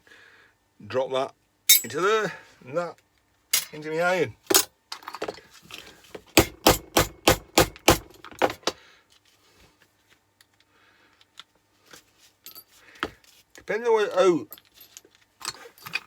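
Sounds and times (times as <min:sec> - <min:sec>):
hammer striking scrap metal: 0:01.7 - 0:02.0.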